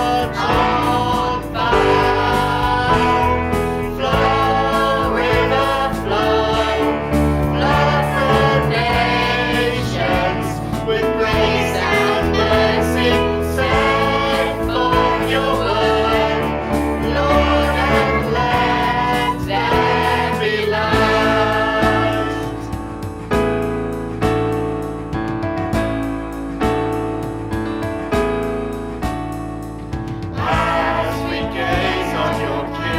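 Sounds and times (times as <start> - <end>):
voices singing together: 0.0 - 22.9, 30.3 - 32.9
band with keyboard: 0.0 - 32.9.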